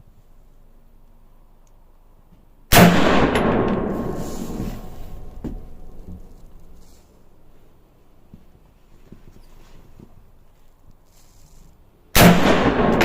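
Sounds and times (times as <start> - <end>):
gunshot with long echo: 2.7 - 5.0, 12.2 - 13.0.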